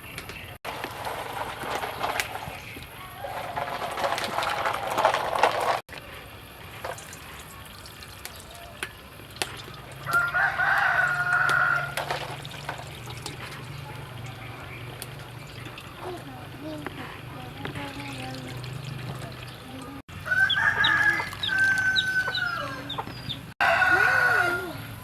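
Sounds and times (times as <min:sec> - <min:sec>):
rooster crowing: 0:10.0 - 0:12.2, 0:20.2 - 0:25.0.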